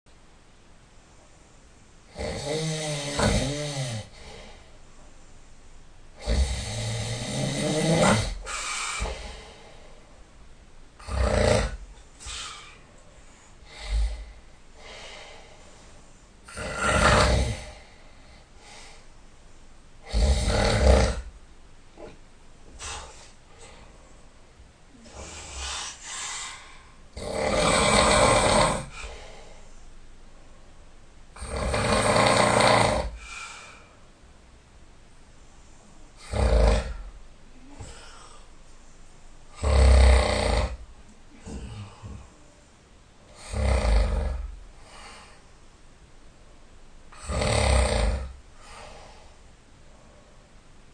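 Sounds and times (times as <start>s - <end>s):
person snoring loudly: 2.1s - 4.4s, 6.2s - 9.5s, 11.0s - 12.7s, 13.6s - 14.4s, 16.5s - 17.8s, 20.0s - 21.3s, 27.2s - 29.2s, 31.4s - 33.3s, 36.2s - 37.1s, 39.6s - 40.8s, 43.4s - 44.6s, 47.1s - 48.4s
faint breaths: 3.1s - 7.0s, 8.0s - 10.6s, 11.8s - 19.8s, 21.9s - 27.2s, 28.0s - 31.0s, 33.0s - 34.5s, 36.9s - 39.6s, 40.6s - 47.3s, 48.3s - 50.9s.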